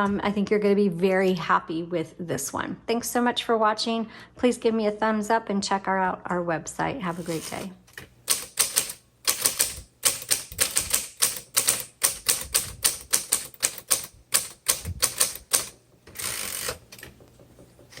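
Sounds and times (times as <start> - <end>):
typewriter keystroke clacks: 8.3 - 18.0
typewriter rasping: 8.3 - 18.0.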